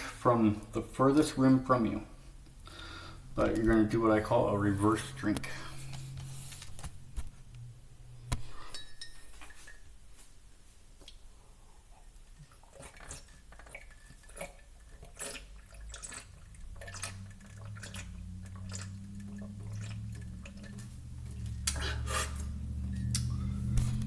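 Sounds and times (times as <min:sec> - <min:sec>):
low steady hum: 0:00.0 - 0:24.0
person gulping water: 0:12.0 - 0:24.0
sharp clicks and splashes: 0:12.3 - 0:21.9.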